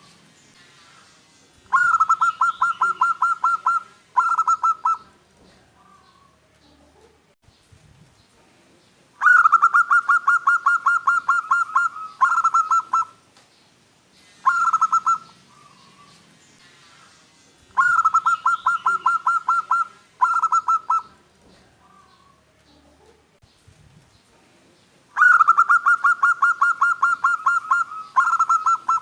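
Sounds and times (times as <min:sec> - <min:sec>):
dove cooing: 0:01.7 - 0:07.2, 0:09.2 - 0:13.2, 0:14.4 - 0:16.2, 0:17.8 - 0:21.2, 0:25.2 - 0:29.0.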